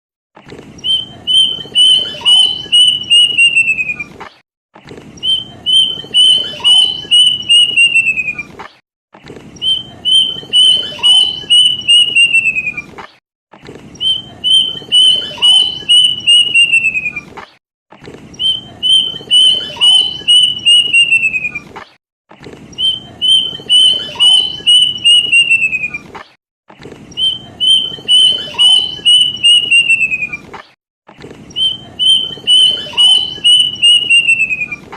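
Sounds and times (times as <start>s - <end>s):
cuckoo whistled song: 0.8s - 4.2s, 5.2s - 8.6s, 9.6s - 12.9s, 14.0s - 17.3s, 18.4s - 21.7s, 22.8s - 26.1s, 27.1s - 30.5s, 31.5s - 34.9s.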